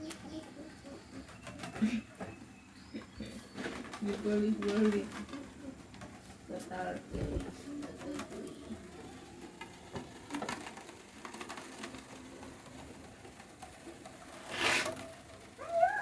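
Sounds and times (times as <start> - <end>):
brief rustle: 14.3 - 15.4.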